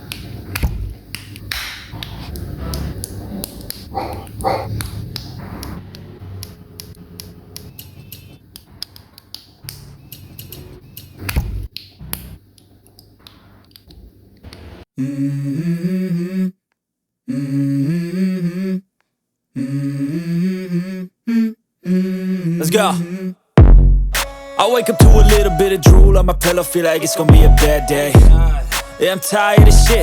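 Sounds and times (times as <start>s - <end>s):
melody in short phrases: 24.2s - 30.0s.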